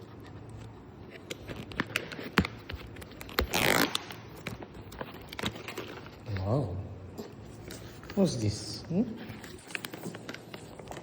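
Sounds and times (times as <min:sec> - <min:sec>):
plastic packet ripping: 0:01.2 - 0:06.4
plastic packet crinkling: 0:01.2 - 0:06.5.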